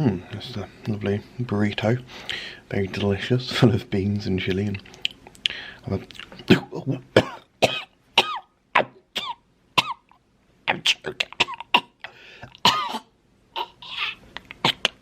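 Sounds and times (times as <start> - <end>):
man coughing and gagging: 6.4 - 10.1, 10.7 - 15.0.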